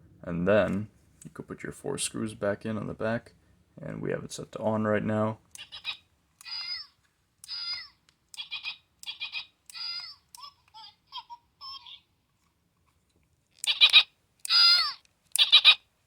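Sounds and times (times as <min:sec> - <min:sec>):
toy voice through small speaker: 0:05.6 - 0:12.1, 0:13.6 - 0:15.8.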